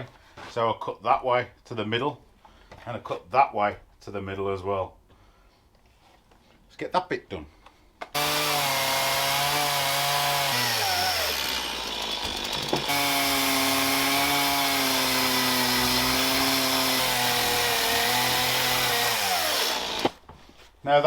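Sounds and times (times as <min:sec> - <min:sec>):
chainsaw cutting wood: 0:08.1 - 0:20.3.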